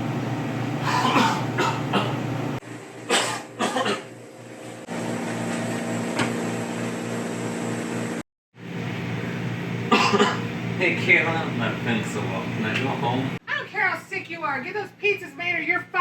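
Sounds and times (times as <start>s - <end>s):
steady low hum: 0.0s - 5.0s, 8.6s - 15.8s
person coughing: 0.8s - 2.2s, 3.1s - 4.1s, 9.9s - 10.5s.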